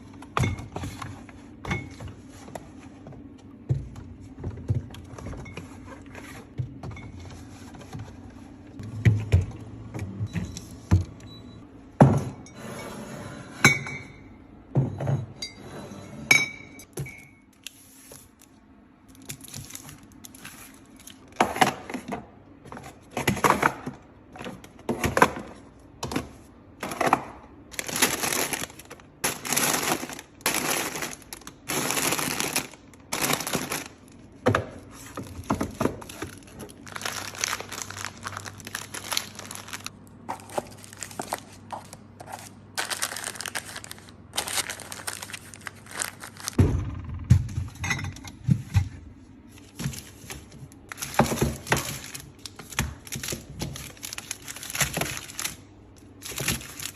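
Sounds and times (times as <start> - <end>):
rustling crinkling packaging: 17.6 - 21.4, 27.7 - 46.6, 49.5 - 56.9.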